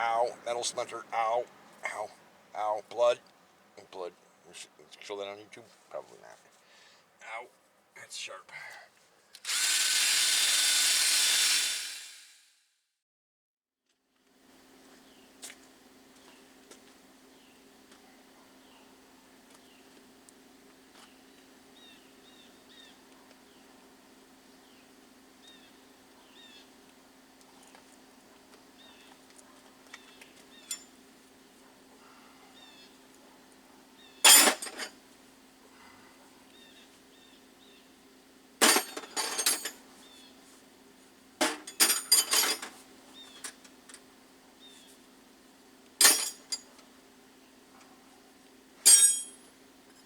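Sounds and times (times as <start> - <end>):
metal tools clinking: 34.3 - 35.0, 38.6 - 39.8, 41.4 - 42.8, 46.0 - 46.7, 48.9 - 49.4.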